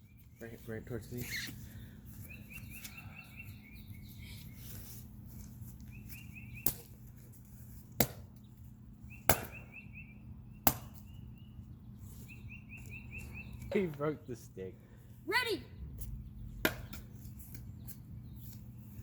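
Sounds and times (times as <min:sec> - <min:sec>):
stick striking styrofoam: 0:09.3 - 0:09.6.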